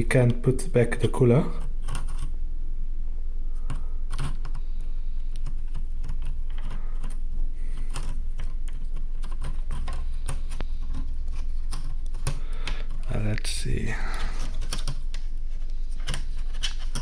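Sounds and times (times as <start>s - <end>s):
steady low hum: 0.0s - 17.0s
plastic and metal parts clicking: 14.1s - 15.2s, 15.9s - 17.0s.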